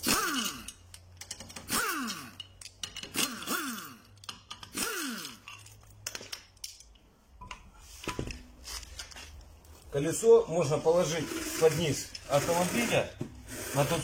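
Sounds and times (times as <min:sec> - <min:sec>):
impact wrench spinning: 0:00.0 - 0:05.7.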